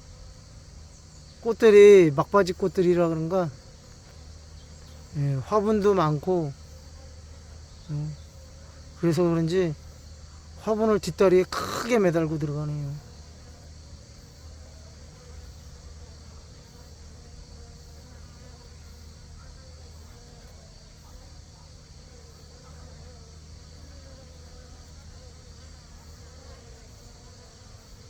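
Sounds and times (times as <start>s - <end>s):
bees buzzing: 0.0s - 28.0s
high insect chirring: 0.0s - 28.0s.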